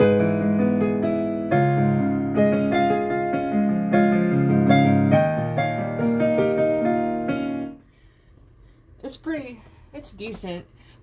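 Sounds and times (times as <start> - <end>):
digital piano chords and melody: 0.0 - 7.8.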